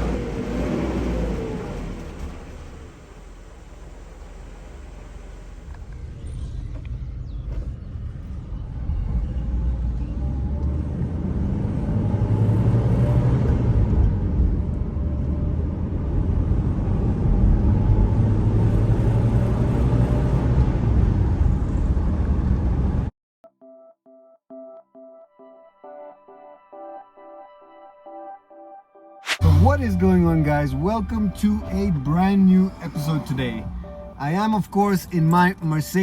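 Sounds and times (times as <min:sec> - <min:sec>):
car engine running: 0:29.4 - 0:36.0.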